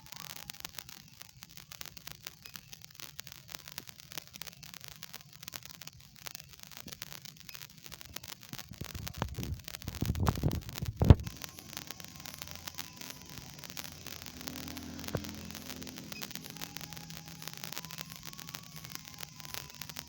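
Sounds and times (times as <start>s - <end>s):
crackling hissy recording noise: 0.0s - 20.0s
scraping against microphone: 8.8s - 11.3s.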